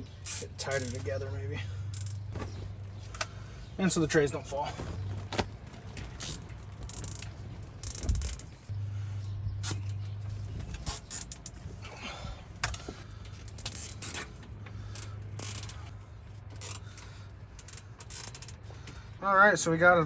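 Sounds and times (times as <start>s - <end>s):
zip ties ratcheting tight: 0.2s - 1.1s, 1.9s - 2.2s, 6.2s - 8.5s, 9.6s - 9.9s, 10.8s - 11.6s, 13.5s - 14.3s, 14.9s - 15.9s, 16.6s - 17.0s, 17.6s - 18.6s
metal shelf clicks and rattles: 6.2s - 8.5s, 10.7s - 11.7s, 13.4s - 14.4s, 15.0s - 15.9s, 17.6s - 18.6s.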